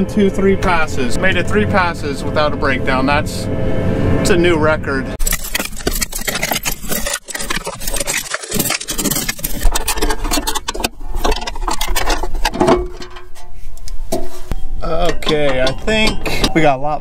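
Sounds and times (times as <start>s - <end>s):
engine running: 0.0s - 13.5s
metallic rattling and scraping: 0.0s - 17.0s.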